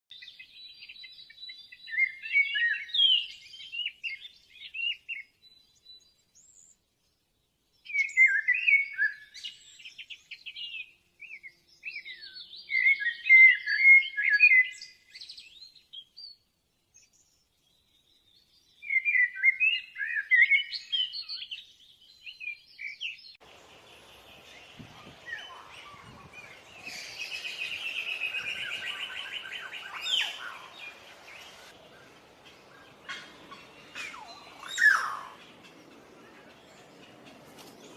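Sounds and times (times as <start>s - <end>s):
songbird chirping: 0.1s - 37.9s
steady background noise: 23.4s - 37.9s.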